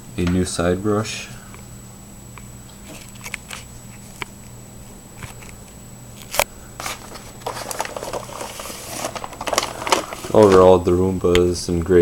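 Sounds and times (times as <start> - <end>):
low steady hum: 0.0 - 12.0
rustling of handling: 6.2 - 10.9.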